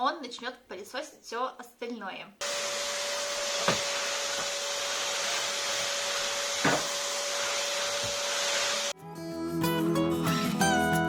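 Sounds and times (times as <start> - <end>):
vacuum cleaner whining: 2.4 - 9.0.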